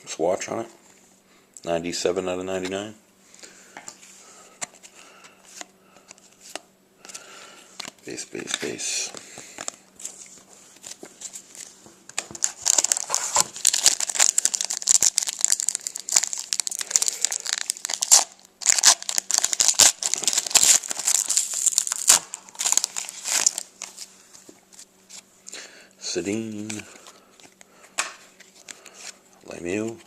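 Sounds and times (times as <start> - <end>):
foil wrapper crinkling and tearing: 12.3 - 24.1.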